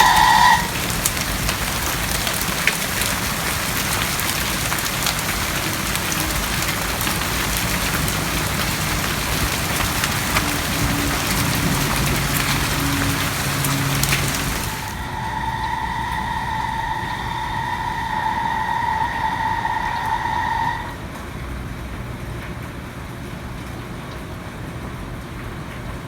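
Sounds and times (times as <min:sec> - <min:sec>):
loud electronic tone: 0:00.0 - 0:00.8
hailstones ticking: 0:00.0 - 0:19.2
heavy rain hissing: 0:00.0 - 0:21.4.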